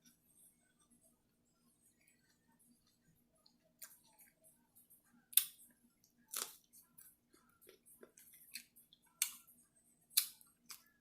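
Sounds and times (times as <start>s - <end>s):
close chewing with mouth clicks: 5.3s - 9.5s.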